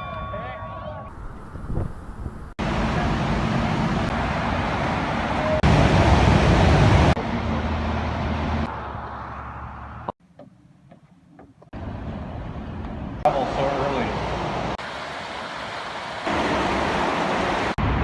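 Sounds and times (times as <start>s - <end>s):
running water rushing: 13.3s - 17.8s.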